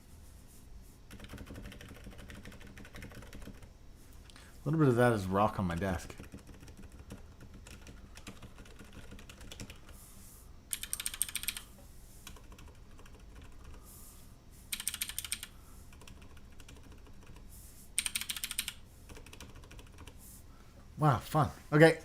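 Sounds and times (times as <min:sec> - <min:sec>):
mechanical keyboard typing: 0:01.1 - 0:03.7, 0:05.8 - 0:09.8, 0:10.7 - 0:13.8, 0:14.7 - 0:17.4, 0:18.0 - 0:20.2.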